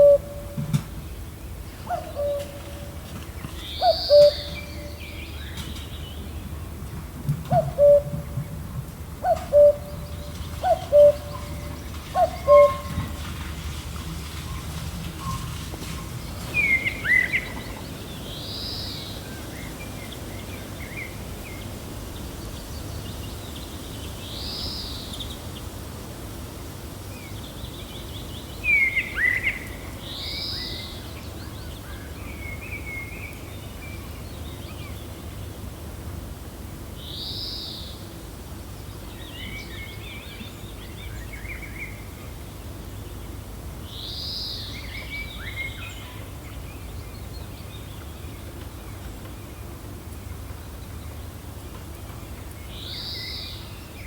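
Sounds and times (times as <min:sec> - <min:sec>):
songbird arched call: 0:00.0 - 0:00.6, 0:01.8 - 0:06.2, 0:09.2 - 0:13.2
gentle wind: 0:00.0 - 0:54.0
bird chirps: 0:03.6 - 0:06.1.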